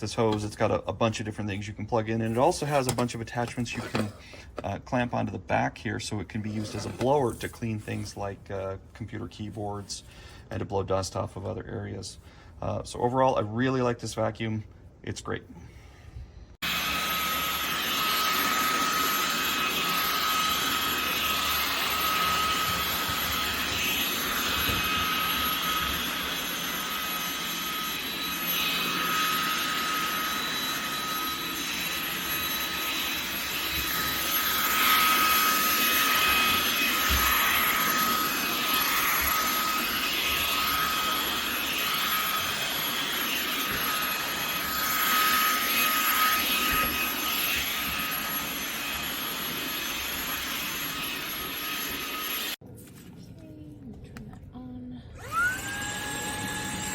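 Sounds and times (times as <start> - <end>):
handheld vacuum running: 2.3 - 4.6, 6.4 - 8.1, 16.6 - 52.6, 55.2 - 56.9.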